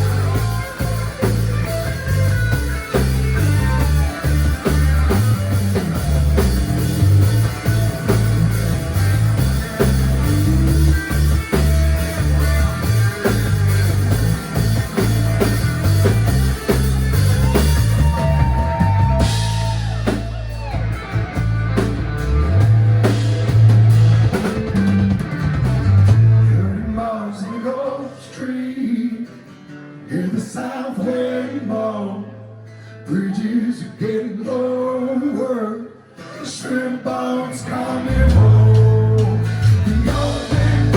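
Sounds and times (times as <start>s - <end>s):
drum kit and cymbals: 0.0s - 26.4s, 38.2s - 40.9s
bass guitar: 0.0s - 27.2s, 37.8s - 40.9s
electric guitars: 0.0s - 27.6s, 36.2s - 40.9s.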